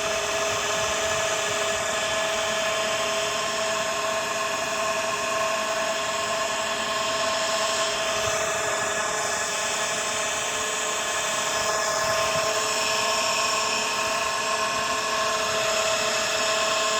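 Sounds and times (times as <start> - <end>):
water pump motor whining: 0.0 - 16.9.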